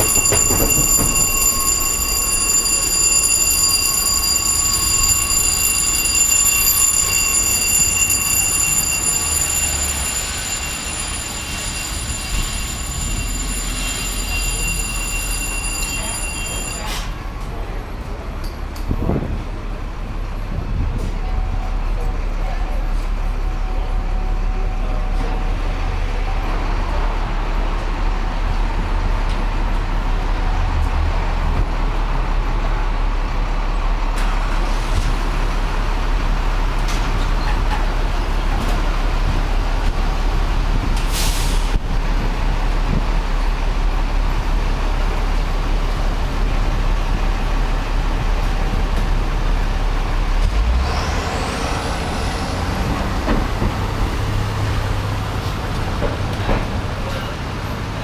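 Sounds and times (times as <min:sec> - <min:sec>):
diesel fire truck engine rumble: 0:12.2 - 0:58.0
air brake hissing: 0:41.0 - 0:41.8.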